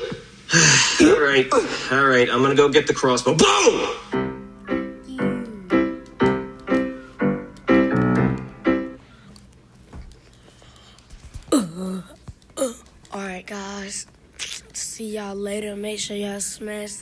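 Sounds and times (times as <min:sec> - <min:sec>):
piano melody: 0:04.1 - 0:09.0.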